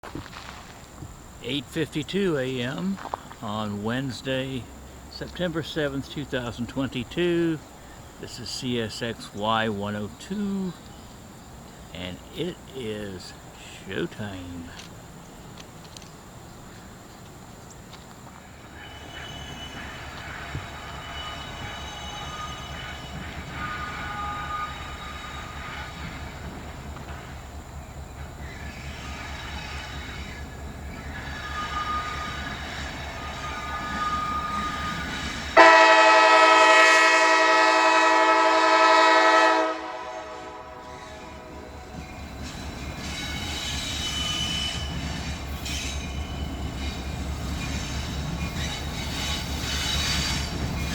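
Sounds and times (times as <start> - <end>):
low diesel rumble: 0.6 - 18.2
locomotive chord horn blasts: 18.6 - 26.6, 31.1 - 42.0.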